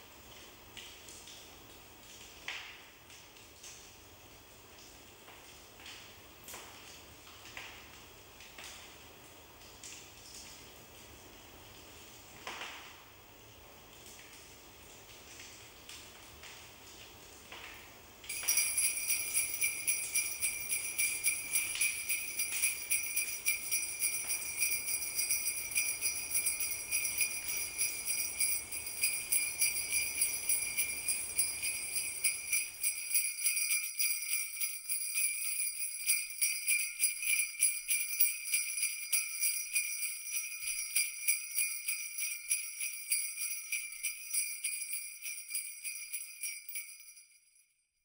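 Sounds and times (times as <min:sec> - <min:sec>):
jingle bells shaking: 0:18.3 - 0:47.8.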